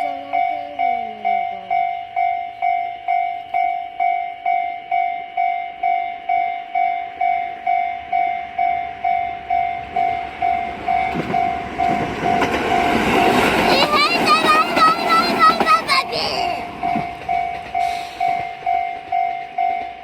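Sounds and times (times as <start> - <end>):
level crossing warning bell: 0.0 - 20.0
approaching train rumble: 6.8 - 20.0.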